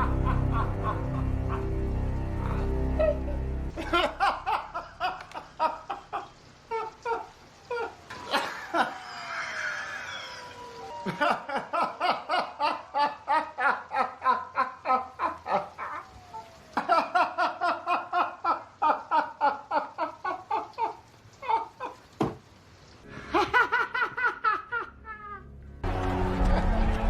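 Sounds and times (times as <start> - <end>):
hearty laughter: 0.0 - 1.7, 2.4 - 7.2, 11.0 - 16.0, 23.1 - 25.5.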